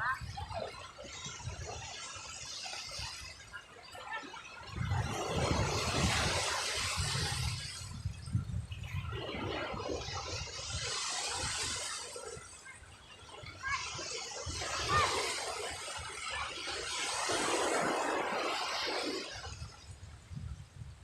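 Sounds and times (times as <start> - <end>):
sea waves on shore: 0.0 - 21.0
low rumbling gusts: 4.7 - 10.8.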